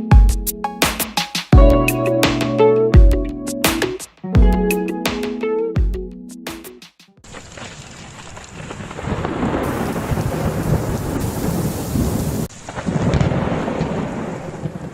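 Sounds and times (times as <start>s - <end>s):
stormy weather rushing hiss: 8.9s - 14.9s.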